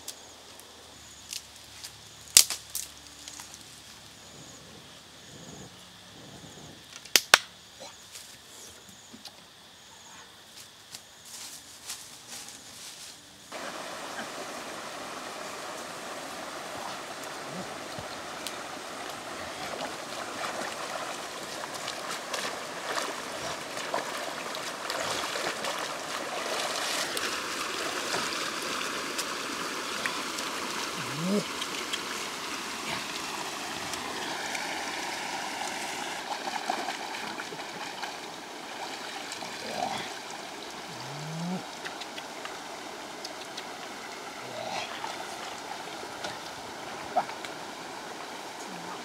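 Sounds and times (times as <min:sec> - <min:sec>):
flowing water rushing: 0:13.5 - 0:49.0.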